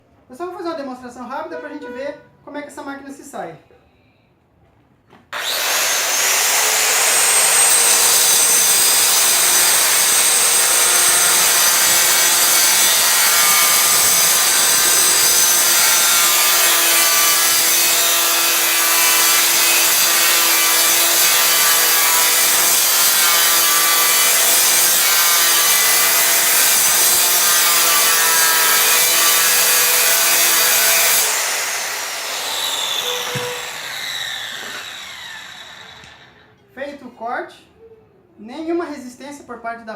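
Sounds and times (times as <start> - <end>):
electric disc cutter cutting stone: 5.4 - 36.4.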